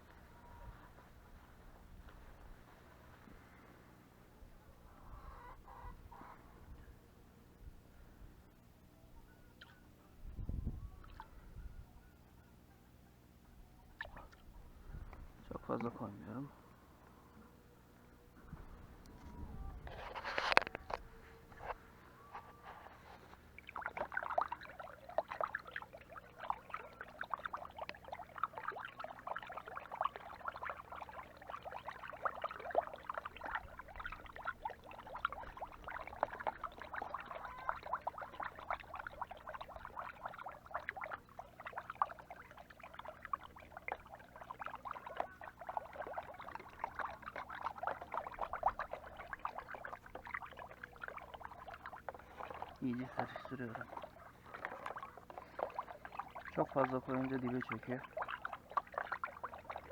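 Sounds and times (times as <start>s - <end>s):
faint low hum: 0.0s - 59.9s
water splashing and sloshing: 13.9s - 16.4s, 18.5s - 59.9s.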